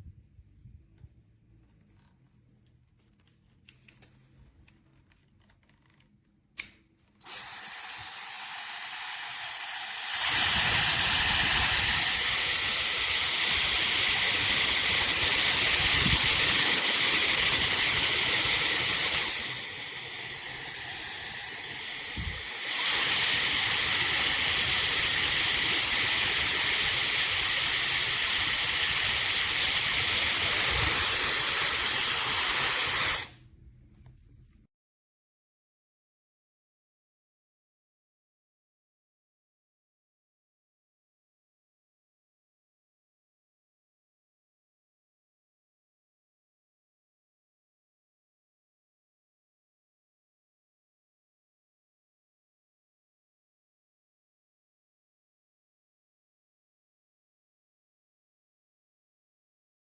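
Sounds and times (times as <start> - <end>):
hair dryer running: 7.2 - 33.3.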